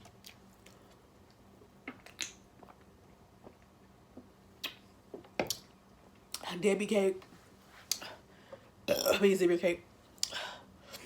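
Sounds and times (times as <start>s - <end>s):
person chewing food: 0.0s - 4.8s.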